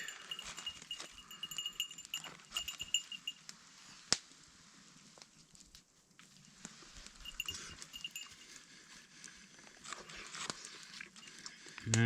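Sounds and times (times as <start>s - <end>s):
dog collar tags jingling: 0.0s - 3.4s, 7.1s - 8.6s.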